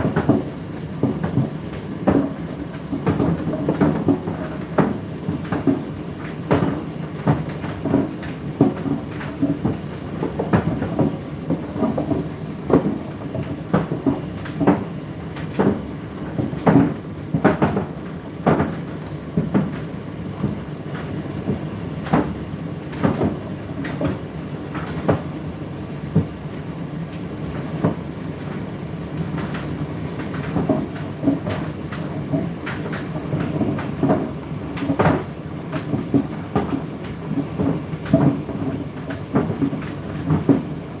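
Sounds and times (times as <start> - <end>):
load knocking in dryer drum: 29.4 - 40.7.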